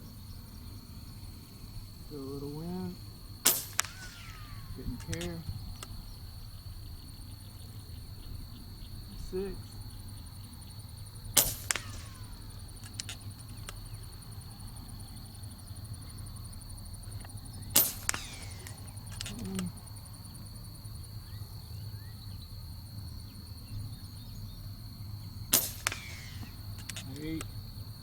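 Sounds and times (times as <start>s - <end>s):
high insect drone: 0.0s - 28.0s
air rifle shots: 2.7s - 6.9s, 11.2s - 14.0s, 17.7s - 19.8s, 25.4s - 27.6s.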